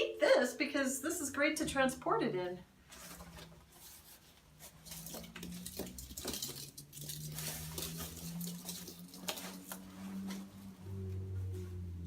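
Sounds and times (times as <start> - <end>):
packaging rustling: 2.9 - 10.4
low steady hum: 4.6 - 12.0.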